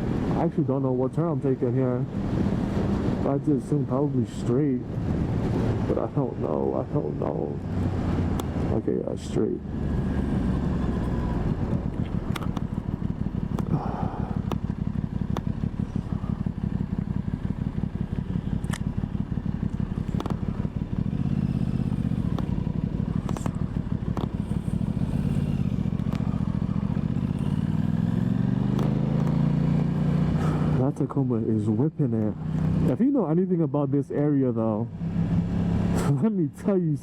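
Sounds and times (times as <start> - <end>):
motorcycle engine running: 0.0 - 33.6, 34.2 - 37.0
sharp ticks: 15.3 - 15.5, 18.5 - 19.0, 22.0 - 22.6.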